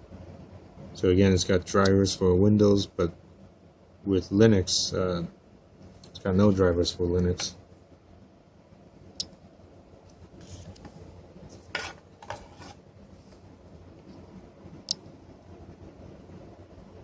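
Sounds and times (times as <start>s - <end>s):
short scrapes: 11.6s - 12.8s.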